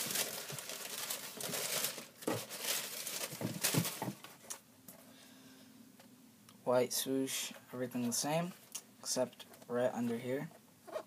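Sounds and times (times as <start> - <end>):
paper crinkling and rustling: 0.0 - 4.6.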